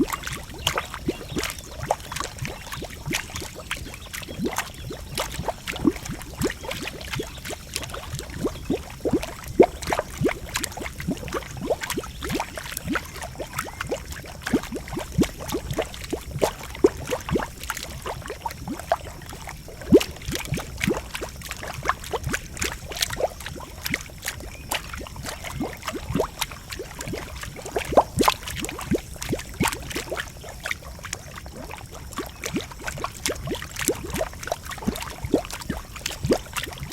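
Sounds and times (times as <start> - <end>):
boiling pool bubbling and popping: 0.0 - 36.9.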